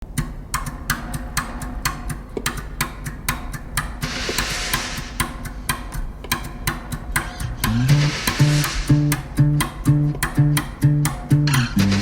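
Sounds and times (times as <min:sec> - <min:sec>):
percussive clicking beat: 0:00.0 - 0:12.0
hissing swell: 0:07.6 - 0:09.2.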